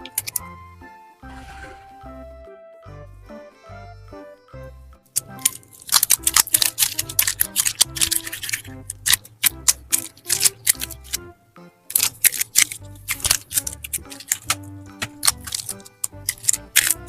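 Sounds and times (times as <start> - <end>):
background music: 0.0 - 17.0
slime clicks and squelches: 5.2 - 11.2, 11.9 - 17.0.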